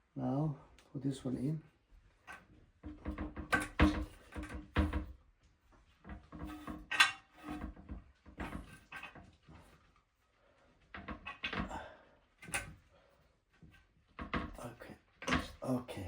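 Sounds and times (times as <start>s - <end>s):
knocks and clicks of toilet tank bolt: 2.8s - 5.1s.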